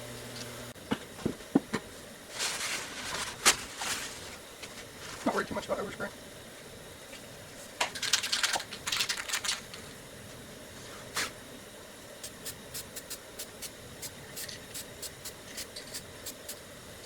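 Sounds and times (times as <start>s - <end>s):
spray can hissing bursts: 12.2s - 16.7s.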